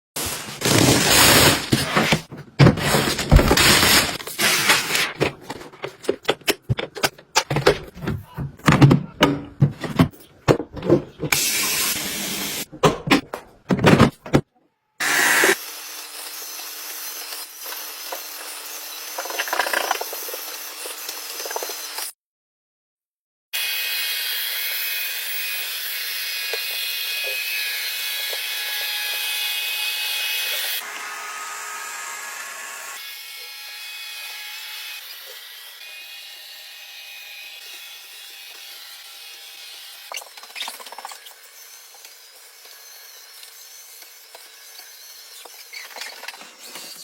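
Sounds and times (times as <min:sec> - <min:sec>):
vacuum motor hiss and hum: 0:15.0 - 0:15.6.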